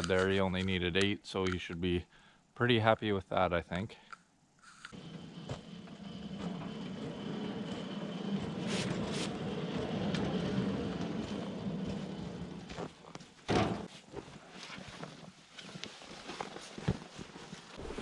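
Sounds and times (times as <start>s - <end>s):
loud thump: 13.5s - 13.9s.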